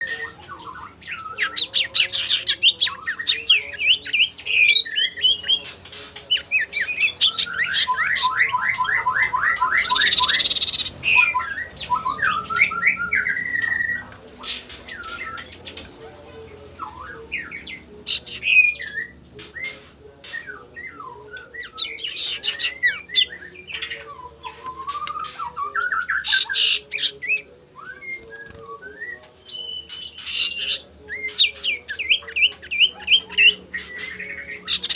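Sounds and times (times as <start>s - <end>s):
bird whistles and chirps: 18.5s - 34.9s.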